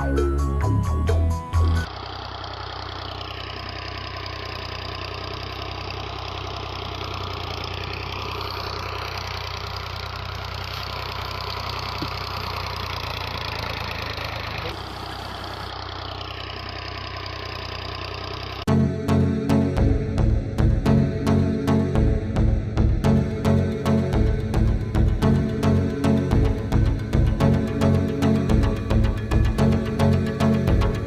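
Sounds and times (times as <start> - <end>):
small electric motors whining: 1.8 - 18.7.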